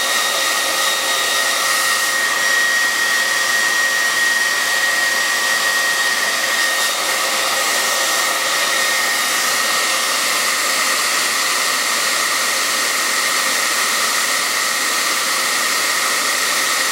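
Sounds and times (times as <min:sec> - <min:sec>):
hair dryer running: 0:00.0 - 0:16.9.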